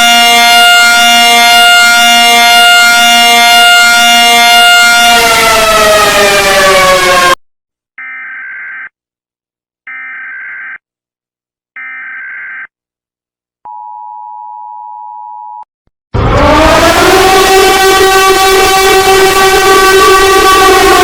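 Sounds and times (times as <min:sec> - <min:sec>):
horn-like sound rising in pitch: 0:00.0 - 0:07.4, 0:16.2 - 0:21.0
loud falling siren: 0:00.0 - 0:07.4, 0:16.2 - 0:21.0.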